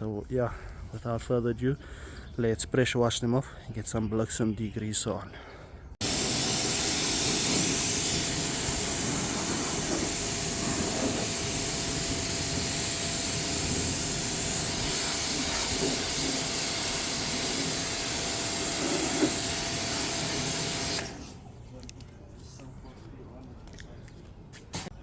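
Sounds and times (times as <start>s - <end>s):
pressure washer spraying carpet: 6.0s - 21.4s.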